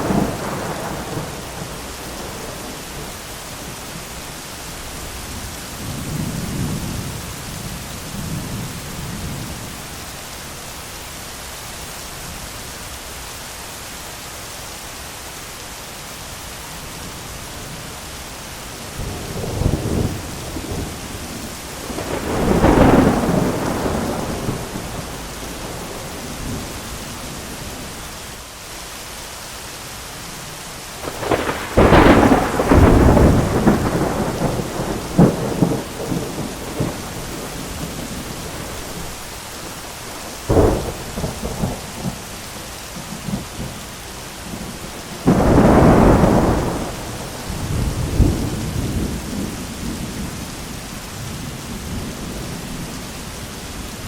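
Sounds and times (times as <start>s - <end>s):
thunder rumbling and cracking: 0.0s - 3.3s, 18.8s - 27.8s, 31.0s - 39.3s, 40.1s - 43.8s, 44.4s - 50.4s
heavy rain: 0.0s - 54.0s.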